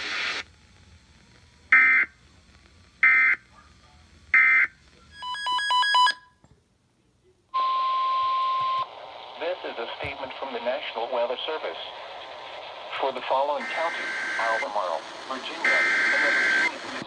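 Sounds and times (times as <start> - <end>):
buzzy data bursts: 12.9 - 17.0
electronic beeps: 13.6 - 14.7, 15.6 - 16.8.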